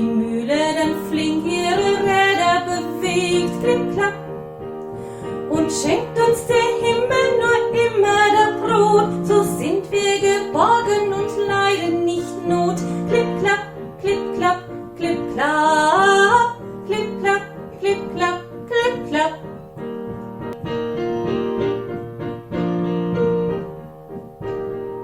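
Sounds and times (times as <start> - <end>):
woman singing folk song: 0.0 - 4.4, 5.4 - 19.6.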